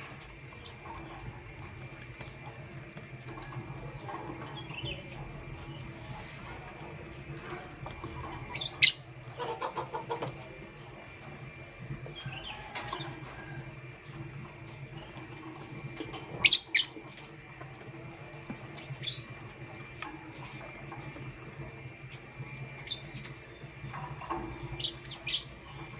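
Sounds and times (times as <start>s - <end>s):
low steady hum: 0.0s - 25.9s
lovebirds chirping: 8.4s - 10.1s, 16.4s - 17.1s, 22.0s - 25.9s.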